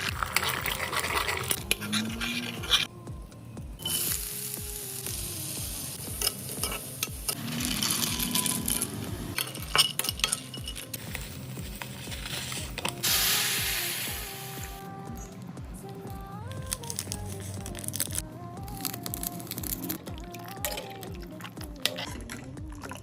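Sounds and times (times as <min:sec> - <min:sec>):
food sizzling in a frying pan: 0:03.8 - 0:09.1, 0:11.0 - 0:14.8.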